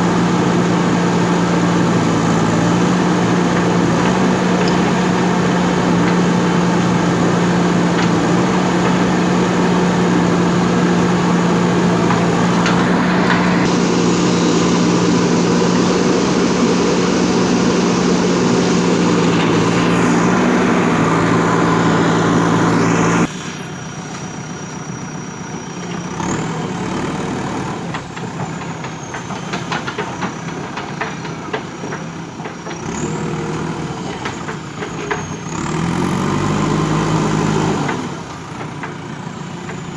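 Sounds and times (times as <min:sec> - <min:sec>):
diesel engine humming: 0:00.0 - 0:39.9
knocks and rattles: 0:03.4 - 0:22.6.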